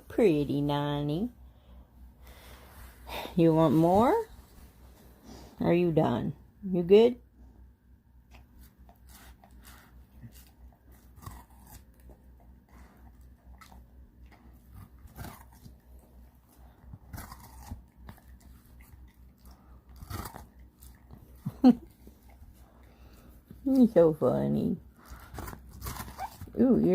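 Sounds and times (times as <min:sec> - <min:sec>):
dog crunching watermelon: 0:08.3 - 0:26.9.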